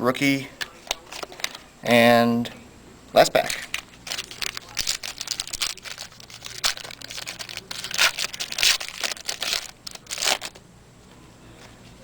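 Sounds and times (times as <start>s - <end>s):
foil pack crinkling and tearing: 3.4s - 10.6s.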